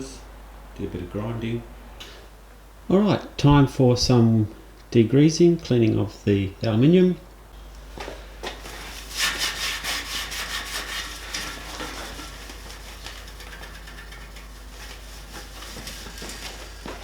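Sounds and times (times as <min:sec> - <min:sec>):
cloth rubbing on metal tubing: 0:08.6 - 0:17.0.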